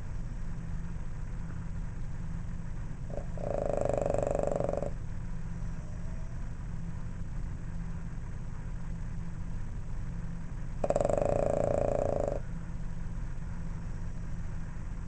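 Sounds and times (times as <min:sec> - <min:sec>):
dog snoring: 0:03.1 - 0:05.0, 0:10.8 - 0:12.5.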